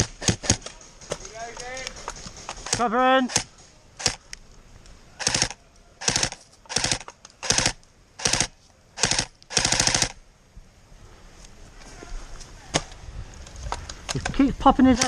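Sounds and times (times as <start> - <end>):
airsoft rifle automatic bursts: 2.0 - 4.2, 5.2 - 10.2.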